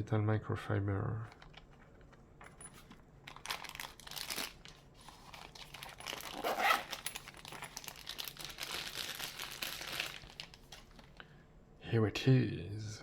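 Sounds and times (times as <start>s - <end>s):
packaging crinkling: 2.8s - 11.2s.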